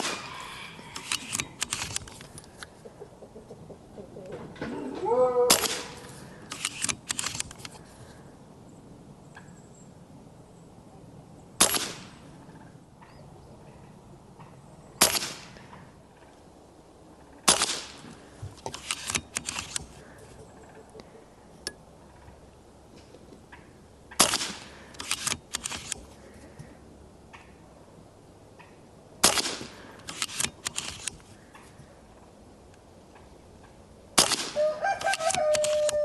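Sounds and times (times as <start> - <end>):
air rifle shots: 0.0 - 0.3, 5.5 - 7.7, 11.6 - 12.2, 15.0 - 15.7, 17.4 - 20.0, 24.1 - 26.0, 29.2 - 31.2, 34.2 - 36.0
rifle action clicks: 1.0 - 2.7, 5.5 - 7.8, 18.6 - 20.0, 24.2 - 26.1, 29.2 - 31.3, 34.2 - 36.0.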